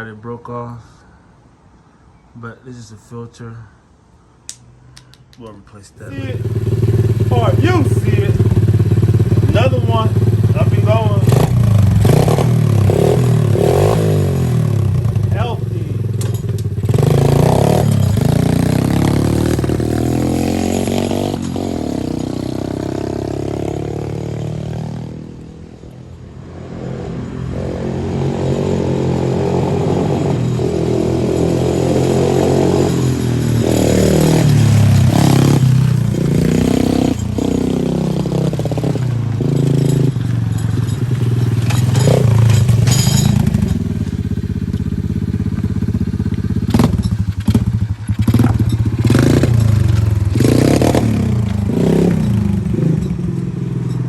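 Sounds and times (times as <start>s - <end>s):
sharp clicks: 4.5s - 5.5s
small engine revving: 6.0s - 25.6s, 26.6s - 53.5s.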